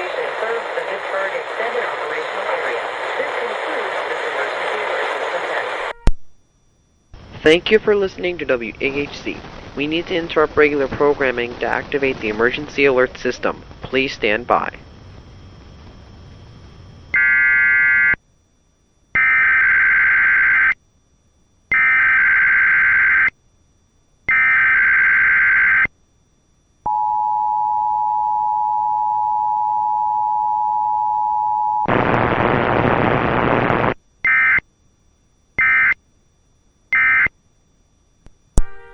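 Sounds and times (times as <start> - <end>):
two-tone attention signal: 5.9 - 6.3.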